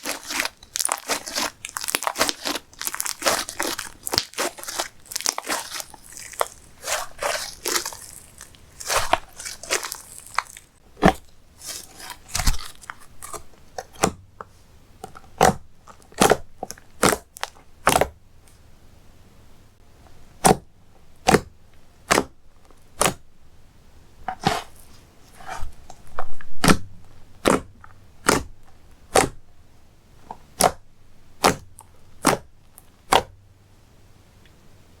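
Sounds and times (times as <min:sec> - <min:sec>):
squishy slime stretching: 0:00.0 - 0:14.1.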